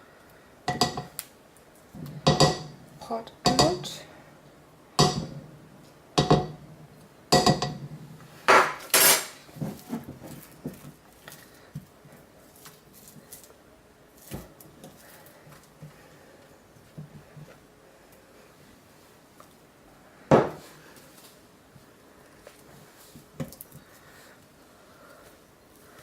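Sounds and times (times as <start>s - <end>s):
utensil knocking against pot: 0.7s - 1.1s, 2.2s - 2.7s, 3.5s - 3.9s, 5.0s - 5.4s, 6.2s - 6.6s, 7.4s - 7.8s.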